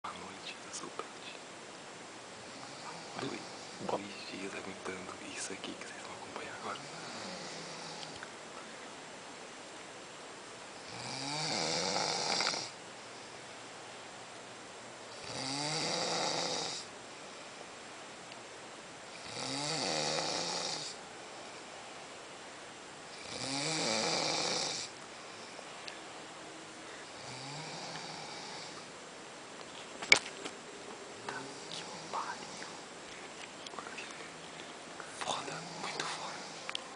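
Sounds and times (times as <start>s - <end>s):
person snoring: 2.4s - 4.3s, 6.8s - 8.2s, 10.8s - 12.8s, 15.1s - 16.9s, 19.1s - 21.0s, 23.1s - 25.4s, 27.0s - 28.9s, 31.4s - 32.8s, 35.3s - 36.7s.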